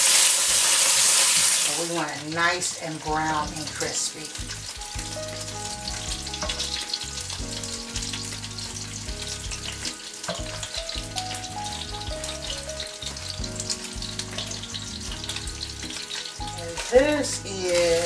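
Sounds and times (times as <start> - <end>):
bacon sizzling in a pan: 0.0 - 18.0.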